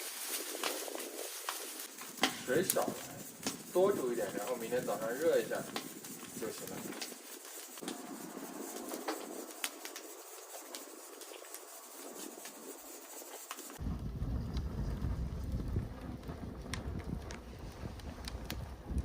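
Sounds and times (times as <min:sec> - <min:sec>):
wood fire crackling: 0:00.0 - 0:19.0
wind buffeting microphone: 0:13.7 - 0:19.0.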